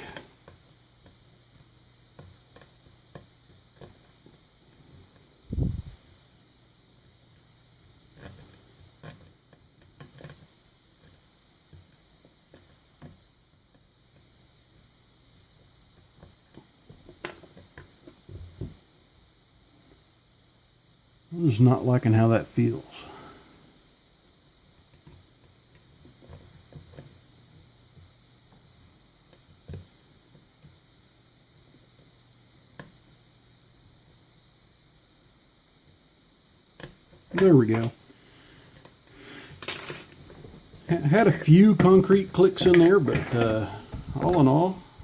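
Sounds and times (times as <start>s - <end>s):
lock pick scraping in padlock: 0.0s - 0.3s.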